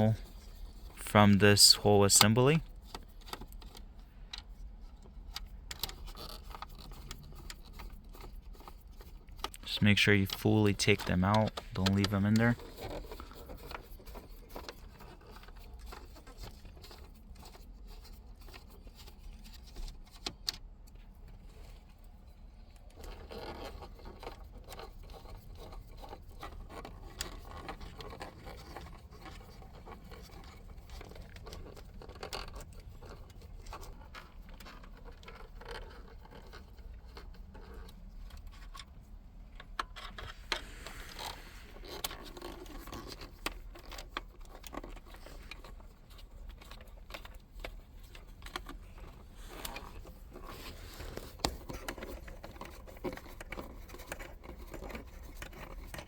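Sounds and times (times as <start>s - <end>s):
low steady hum: 0.0s - 5.7s, 8.8s - 14.7s.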